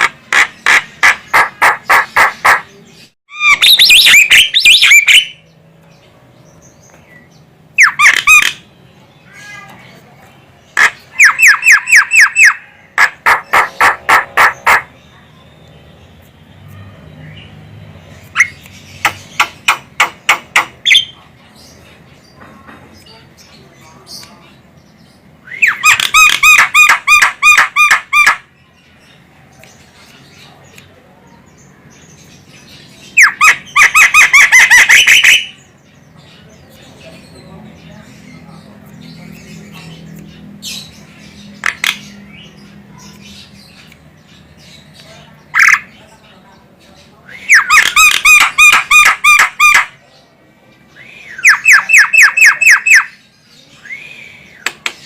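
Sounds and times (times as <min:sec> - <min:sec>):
bird harsh scratchy calls: 0:00.0 - 0:05.4, 0:07.8 - 0:08.7, 0:10.6 - 0:15.2, 0:18.2 - 0:21.2, 0:25.6 - 0:28.5, 0:32.0 - 0:35.8, 0:38.2 - 0:46.0, 0:47.4 - 0:50.0, 0:51.4 - 0:53.5.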